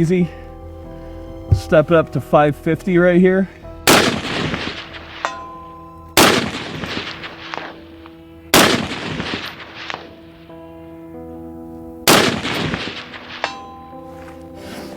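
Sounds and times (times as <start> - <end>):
rifle shots with echo: 3.9 - 5.3, 6.2 - 7.9, 8.5 - 10.2, 12.1 - 13.5.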